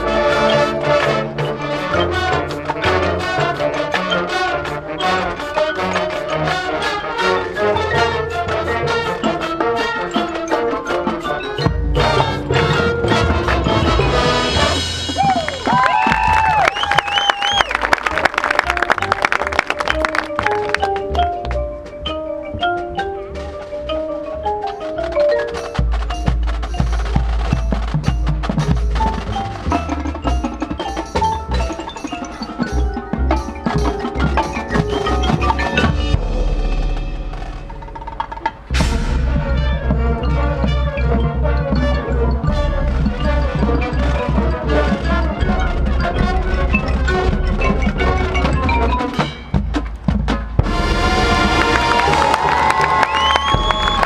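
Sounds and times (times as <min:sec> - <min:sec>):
marimbas and glockenspiel: 0:00.0 - 0:15.8, 0:18.6 - 0:50.8
drums: 0:00.0 - 0:54.0
marching band playing: 0:00.0 - 0:54.0
low bass line: 0:33.2 - 0:48.9.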